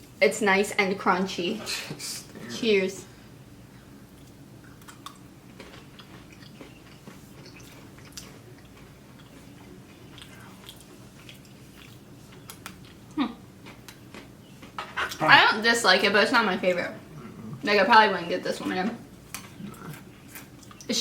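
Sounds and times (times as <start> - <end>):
chocolate sticks being bitten and chewed: 4.2 - 14.3.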